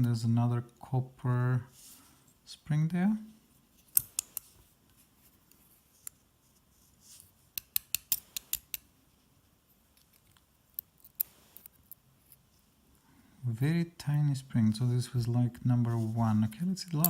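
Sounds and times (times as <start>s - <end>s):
small metallic clicks and taps: 3.9s - 4.5s, 7.6s - 8.9s.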